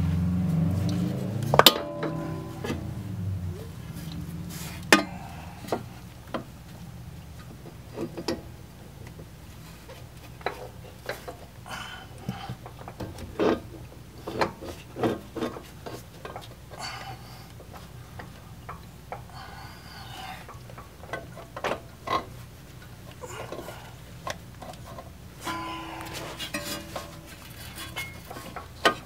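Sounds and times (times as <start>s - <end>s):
sharp metal knocks and clicks: 1.4s - 2.9s
rubbing and scraping: 24.6s - 29.0s.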